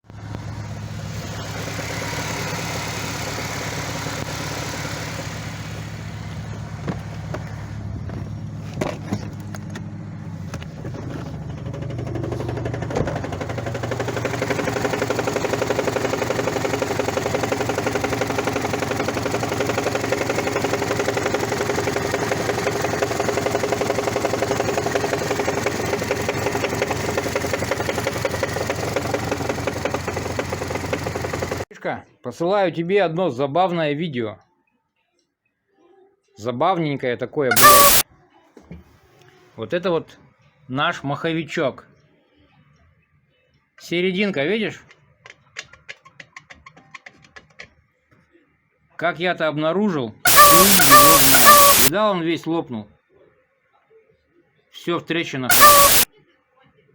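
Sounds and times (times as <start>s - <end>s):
car engine running: 0.0s - 31.6s, 37.5s - 38.0s, 50.3s - 51.9s, 55.5s - 56.1s.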